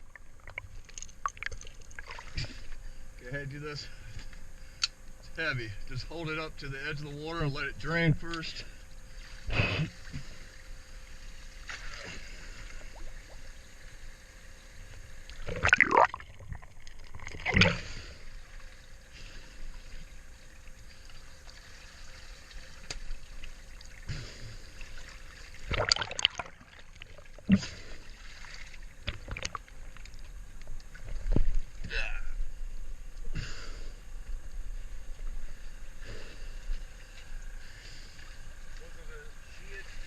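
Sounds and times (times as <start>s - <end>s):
water trickling and splashing: 0.0s - 2.8s, 15.3s - 31.9s.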